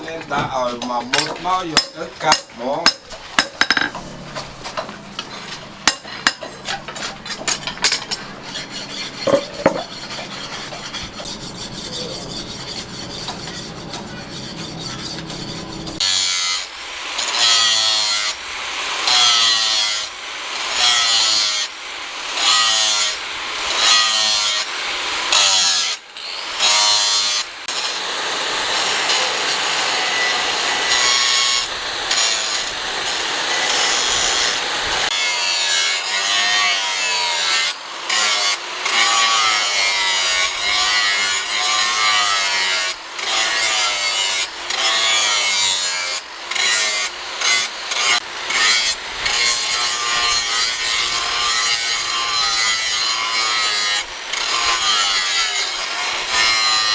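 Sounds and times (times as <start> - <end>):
hand saw sawing: 0.0 - 56.9
light tapping and scraping: 9.2 - 11.3.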